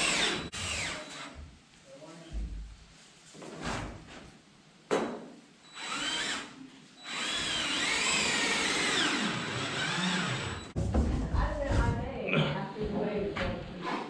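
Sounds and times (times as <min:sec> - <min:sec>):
power drill whining: 0:00.0 - 0:01.3, 0:05.8 - 0:10.8.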